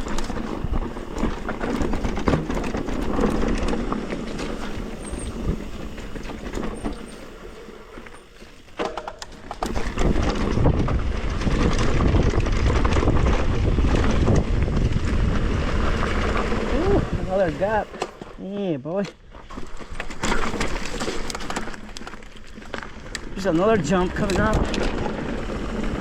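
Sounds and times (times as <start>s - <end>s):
bike rattling and clicking: 0.0s - 18.4s, 19.0s - 26.0s
bike tyres on dirt: 0.0s - 26.0s
wind buffeting microphone: 9.7s - 17.9s.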